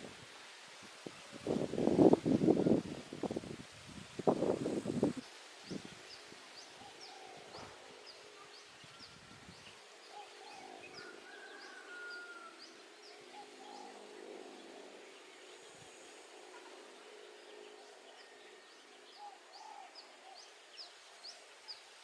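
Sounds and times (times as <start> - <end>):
wind rumble on microphone: 0.0 - 7.8, 8.8 - 9.8
bird chirping: 5.6 - 15.7.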